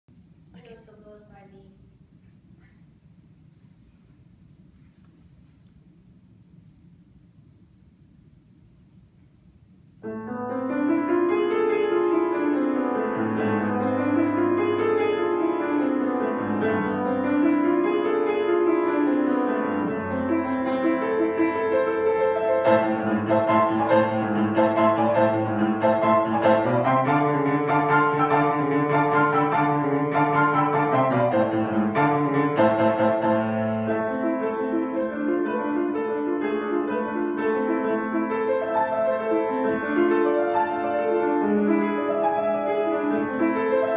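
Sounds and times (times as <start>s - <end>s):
solo piano: 10.0s - 43.9s.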